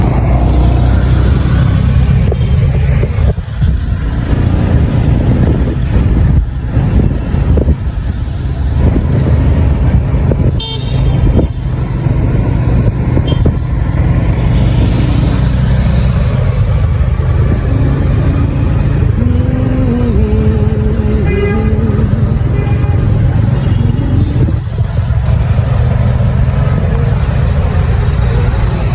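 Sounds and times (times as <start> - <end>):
motorcycle engine rumble: 0.0 - 28.9
road noise: 0.0 - 28.9
short vehicle horn toots: 10.6 - 11.2.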